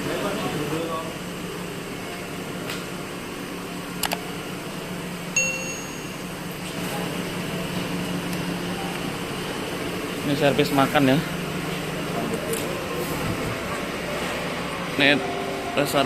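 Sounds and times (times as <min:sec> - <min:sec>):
steady low hum: 0:00.0 - 0:16.0
bell-like ding: 0:05.4 - 0:06.4.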